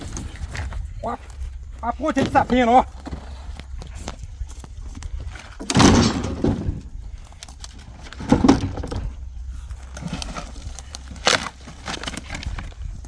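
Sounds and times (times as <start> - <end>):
low steady rumble: 0.0 - 13.0
firewood crashing: 5.6 - 9.2.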